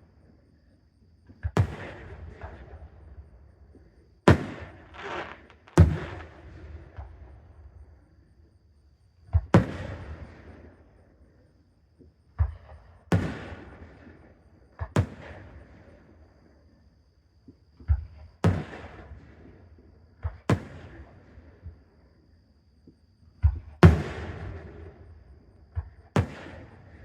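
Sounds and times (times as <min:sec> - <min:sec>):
fireworks bursting: 0:04.3 - 0:07.1, 0:26.2 - 0:26.8.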